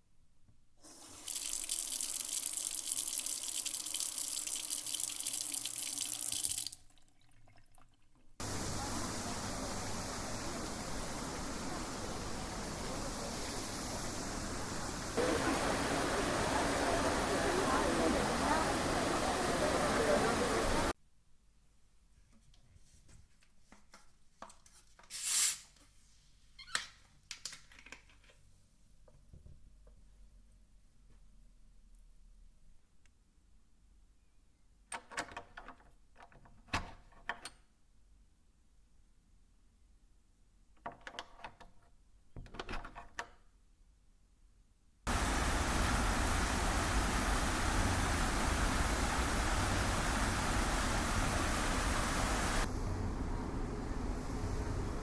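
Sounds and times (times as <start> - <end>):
faint water drips: 1.2 - 14.2
steady rushing noise: 8.4 - 20.9, 45.1 - 55.0.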